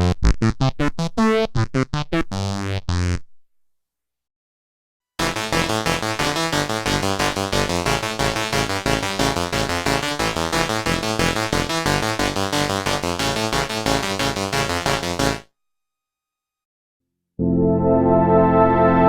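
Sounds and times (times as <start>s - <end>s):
synthesizer note run: 5.2s - 15.4s.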